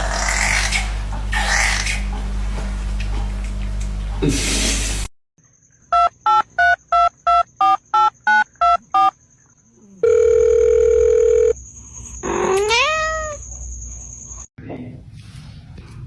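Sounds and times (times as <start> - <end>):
telephone ringing tone: 10.0 - 11.6.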